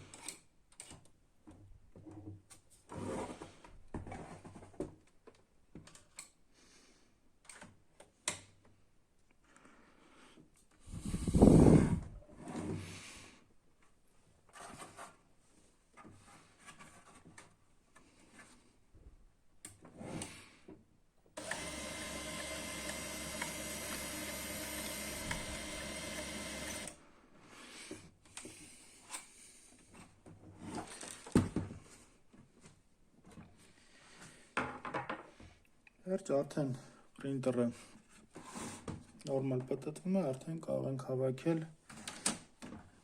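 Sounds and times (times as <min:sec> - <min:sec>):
printer motor driving gears: 0:21.4 - 0:27.0.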